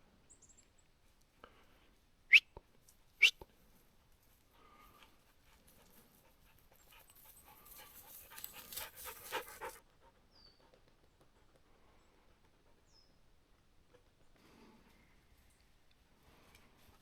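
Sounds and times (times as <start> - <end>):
dog panting: 4.9 - 12.9.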